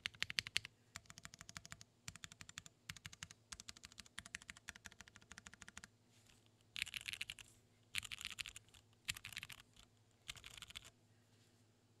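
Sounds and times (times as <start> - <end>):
mechanical keyboard typing: 0.0 - 5.9, 6.8 - 7.4, 8.0 - 10.9.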